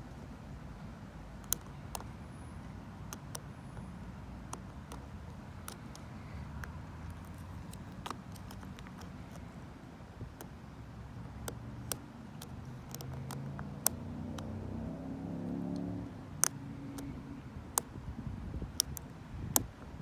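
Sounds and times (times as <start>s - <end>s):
lock pick clicking and scraping: 1.4s - 2.2s, 3.0s - 3.5s, 4.4s - 9.6s, 11.4s - 14.6s, 18.7s - 20.0s.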